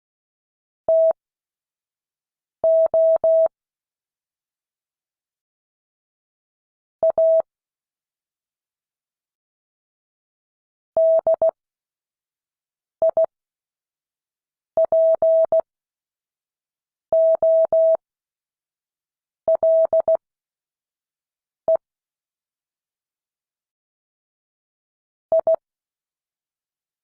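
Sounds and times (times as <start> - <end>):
morse code beeps: 17.2 - 18.0.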